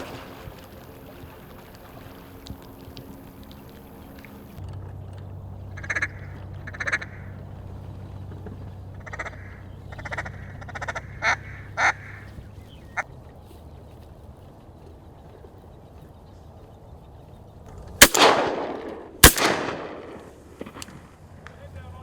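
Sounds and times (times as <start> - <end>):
steady low hum: 0.0 - 22.0
duck quacking: 5.7 - 7.3, 9.0 - 12.3.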